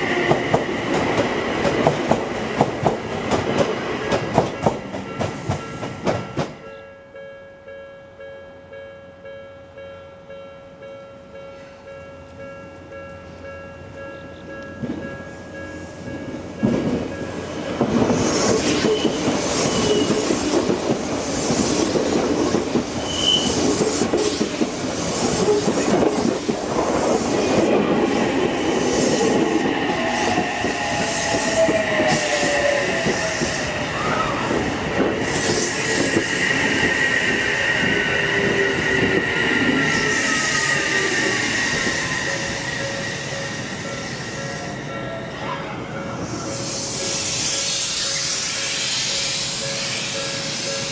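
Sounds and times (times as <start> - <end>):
train wheels clattering over rail joints: 0.2 - 6.6
wheel squeal: 18.2 - 20.4, 23.0 - 23.7.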